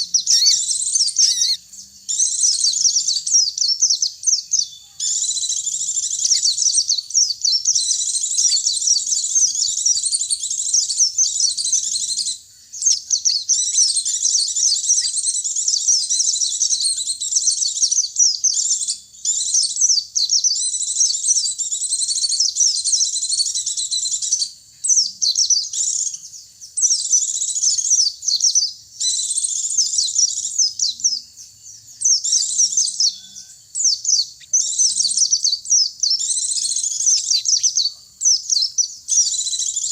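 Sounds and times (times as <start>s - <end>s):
birds twittering rapidly: 0.0s - 39.9s.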